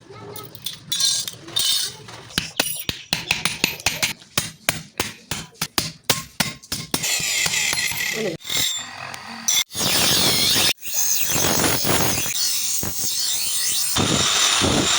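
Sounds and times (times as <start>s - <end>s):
hammer striking steel: 1.6s - 8.7s.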